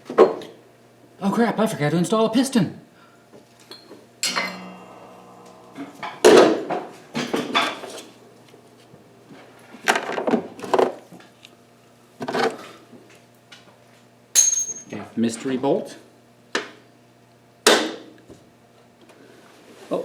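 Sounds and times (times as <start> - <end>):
metal tools clanking: 3.7 - 8.6.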